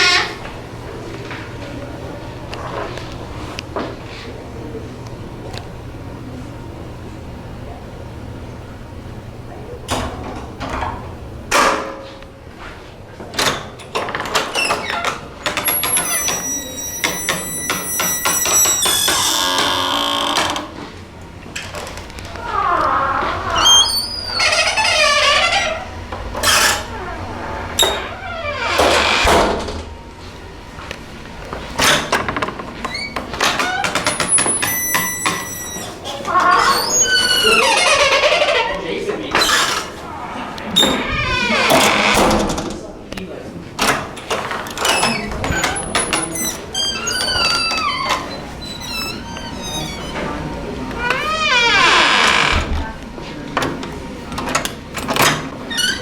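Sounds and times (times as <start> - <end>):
high-pitched door creak: 0.0 - 0.4, 14.4 - 20.8, 22.4 - 27.2, 27.8 - 29.5, 32.9 - 38.8, 40.8 - 42.4, 44.8 - 52.8, 55.7 - 56.0.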